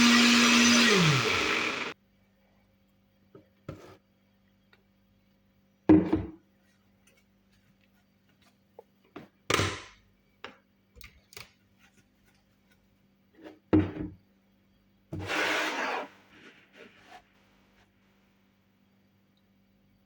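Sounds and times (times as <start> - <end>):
faint steady hum: 16.2 - 20.0.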